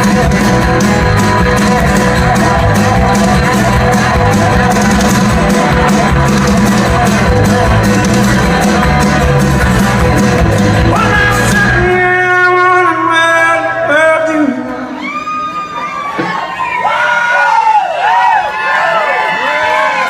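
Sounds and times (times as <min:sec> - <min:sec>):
drums: 0:00.0 - 0:13.4, 0:15.0 - 0:17.0
live band playing loudly: 0:00.0 - 0:15.0.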